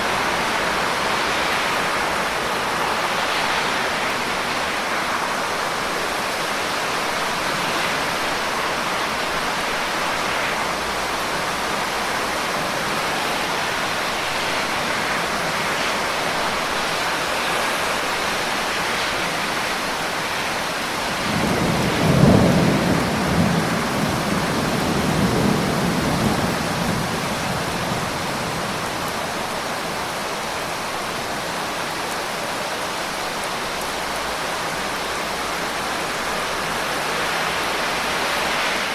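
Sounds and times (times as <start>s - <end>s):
rain hissing: 0.0s - 38.9s
thunder rumbling: 21.0s - 29.7s.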